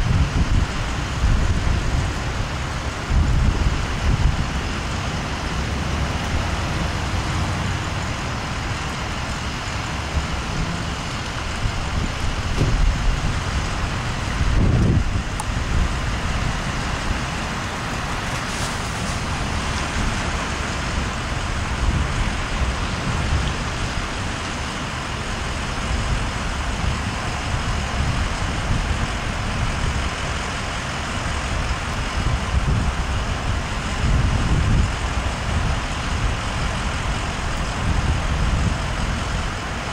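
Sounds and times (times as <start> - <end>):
fire truck engines idling: 0.0 - 39.9.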